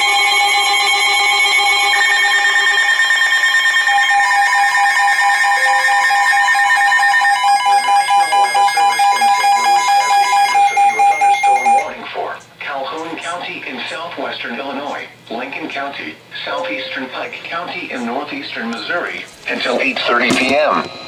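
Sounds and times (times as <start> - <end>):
electronic alert tones: 1.1 - 12.0, 16.5 - 17.3.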